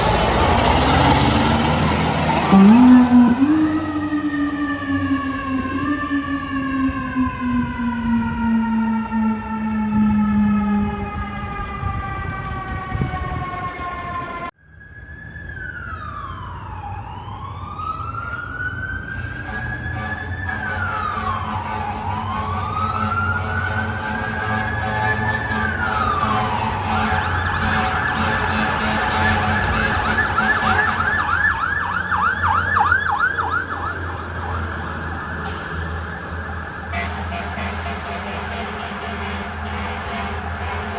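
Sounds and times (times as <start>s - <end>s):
low air horn blast: 0.0s - 14.5s, 26.1s - 31.3s, 36.8s - 40.9s
low engine rumble: 0.0s - 14.5s, 26.0s - 37.0s
mechanical siren winding down: 0.0s - 19.2s, 22.1s - 36.9s
siren wailing: 0.0s - 38.0s.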